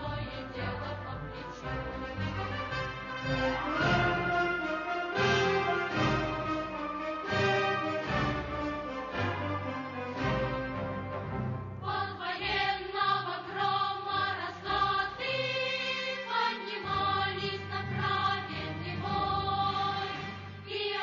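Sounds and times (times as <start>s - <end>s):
instrumental backing music: 0.0s - 12.1s
choir singing: 0.0s - 21.0s.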